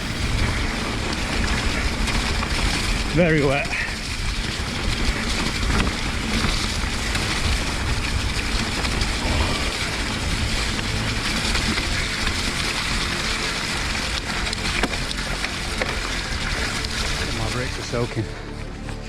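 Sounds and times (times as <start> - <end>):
wind on microphone: 0.0 - 3.1
bike tyres rumbling on wet ground: 0.0 - 19.0.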